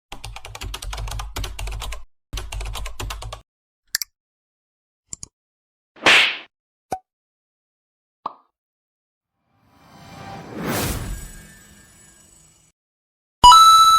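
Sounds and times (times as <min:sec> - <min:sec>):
computer keyboard typing: 0:00.1 - 0:03.4
loud whoosh: 0:09.6 - 0:12.7.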